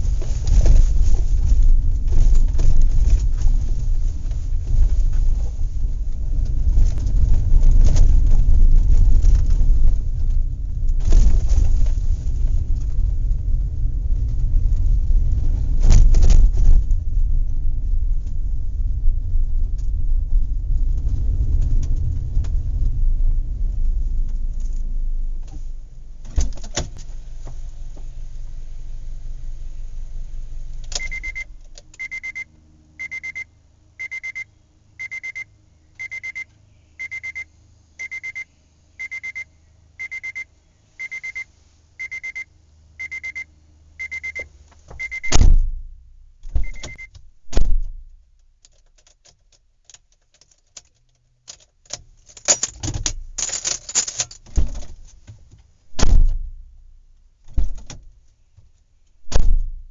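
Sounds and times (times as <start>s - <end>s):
faint low engine hum: 0.0s - 59.9s
reversing alarm beep: 31.0s - 45.4s, 46.6s - 47.1s
heavy thumps: 44.9s - 48.4s, 54.4s - 58.2s, 59.2s - 59.9s.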